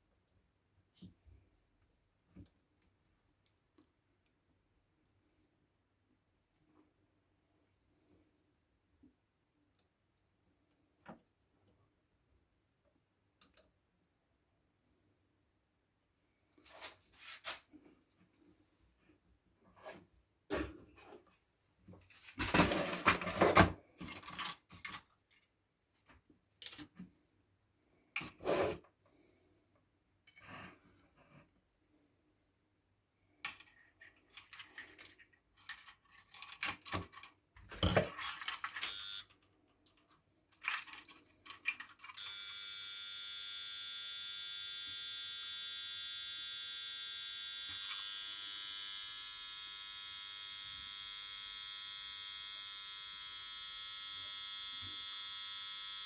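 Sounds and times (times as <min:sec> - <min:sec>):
high electrical buzz: 0:42.2 - 0:56.0.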